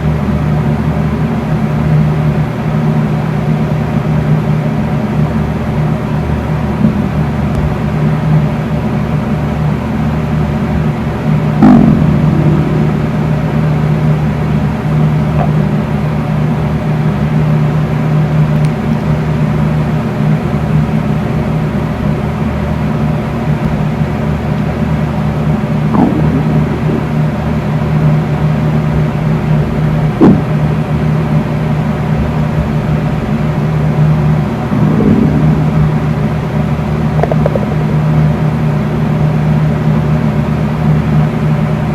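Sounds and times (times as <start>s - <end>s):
electric fan humming: 0.0s - 40.8s
stomach growling and gurgling: 11.6s - 13.3s, 25.8s - 27.8s, 30.2s - 30.6s, 34.6s - 36.5s, 37.2s - 37.8s.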